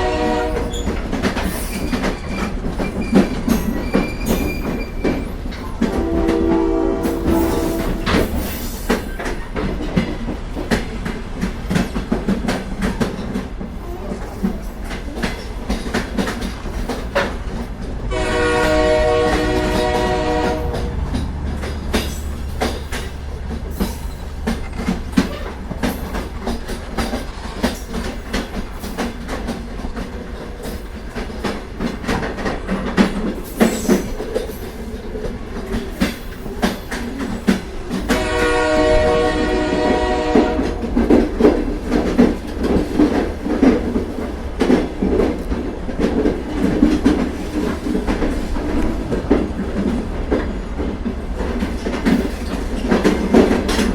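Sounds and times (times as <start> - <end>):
train horn: 0.0 - 1.0, 5.8 - 8.5, 18.1 - 21.2, 38.0 - 41.0
train rumble: 0.0 - 53.9
wheels clacking over rail joints: 0.0 - 53.9.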